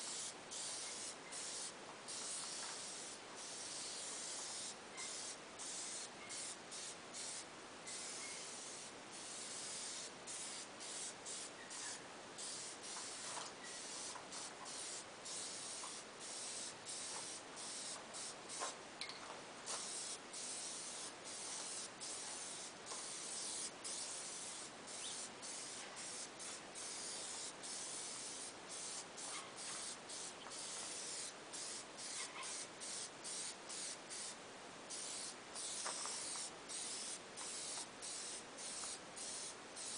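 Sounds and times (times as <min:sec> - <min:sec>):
aerosol spray can hissing: 0:00.1 - 0:18.8, 0:19.7 - 0:39.9.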